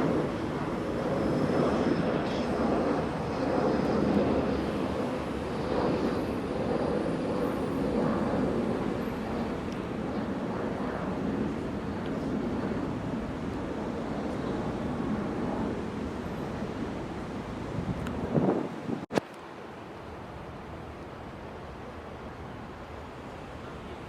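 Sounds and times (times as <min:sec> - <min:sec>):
jet engines rumbling: 0:00.0 - 0:19.2.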